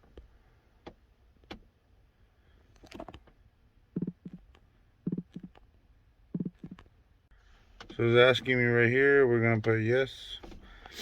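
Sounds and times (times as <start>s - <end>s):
phone vibration buzzing: 4.0s - 4.4s, 5.1s - 5.6s, 6.4s - 6.8s.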